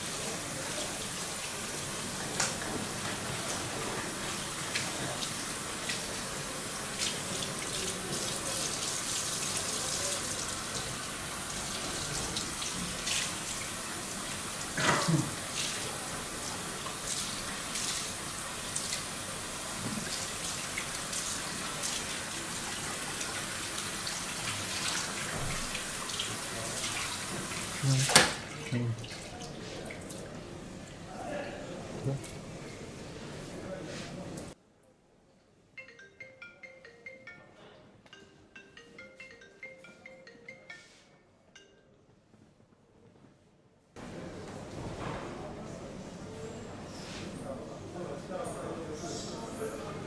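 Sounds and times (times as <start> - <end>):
tap water running into sink: 0.0 - 30.2.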